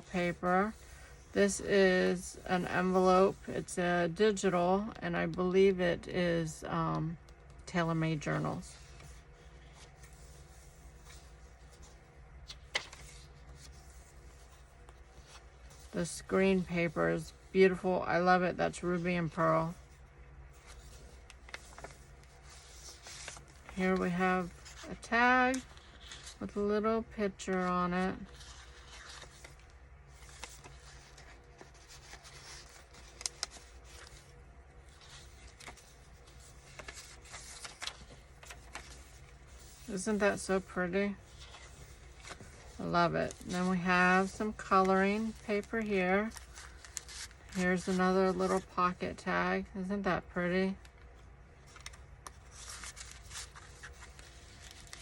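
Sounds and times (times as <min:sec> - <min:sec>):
paper pages rustling: 0:08.2 - 0:17.4, 0:18.8 - 0:26.6, 0:27.4 - 0:48.8, 0:50.8 - 0:55.0.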